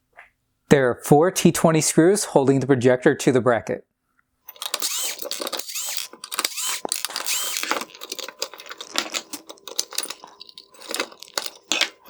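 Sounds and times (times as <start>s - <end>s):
screwdriver clicks and knocks: 4.5s - 10.1s.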